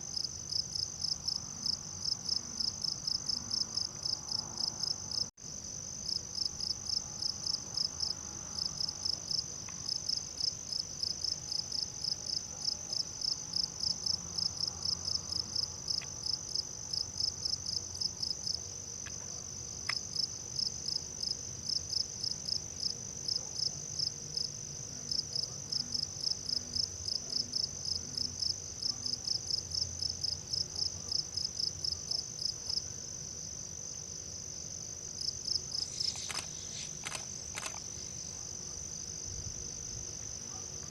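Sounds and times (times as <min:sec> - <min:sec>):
insects trilling: 0:35.2 - 0:38.4
rhythmic short insect chirps: 0:35.7 - 0:38.2.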